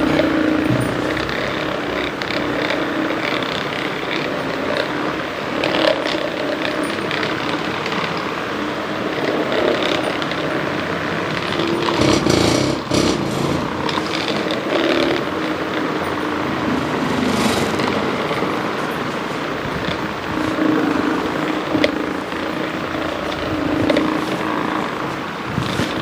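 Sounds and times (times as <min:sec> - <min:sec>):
small motor running: 0:00.0 - 0:17.5.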